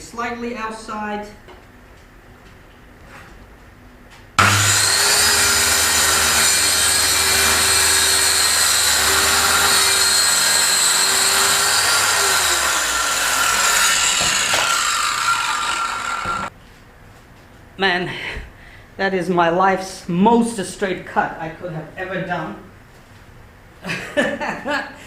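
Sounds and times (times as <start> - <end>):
circular saw cutting plywood: 4.4 - 16.5.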